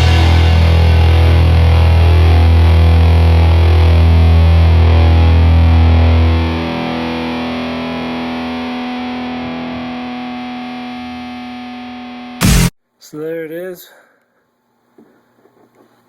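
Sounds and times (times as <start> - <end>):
distorted electric guitar chord: 0.0 - 12.7.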